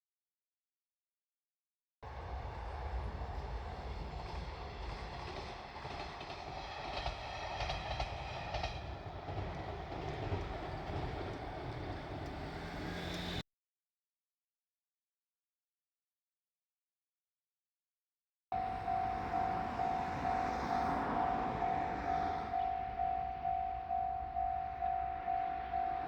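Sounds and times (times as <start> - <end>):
diesel railcar engine running: 2.1 - 13.4, 18.6 - 26.0
wheels clicking over rail joints: 3.4 - 13.4.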